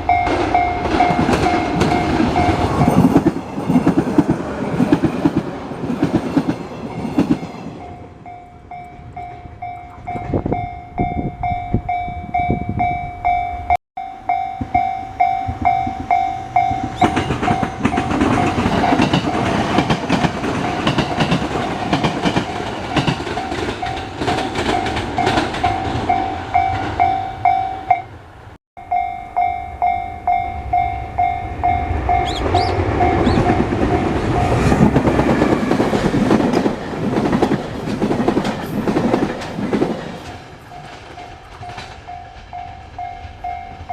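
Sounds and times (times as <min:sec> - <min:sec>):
level-crossing bell dinging: 0:00.0 - 0:03.9, 0:06.9 - 0:19.6, 0:22.9 - 0:28.2, 0:28.8 - 0:34.8
train passing: 0:00.0 - 0:43.9
wheels clicking over rail joints: 0:14.3 - 0:27.1, 0:32.2 - 0:43.9.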